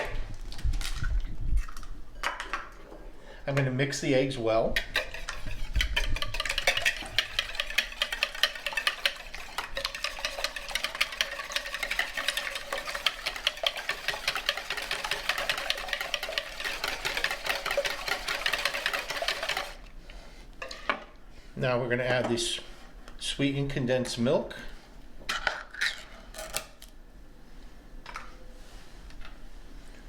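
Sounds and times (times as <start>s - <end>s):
whisk clicking against bowl: 4.8s - 19.8s.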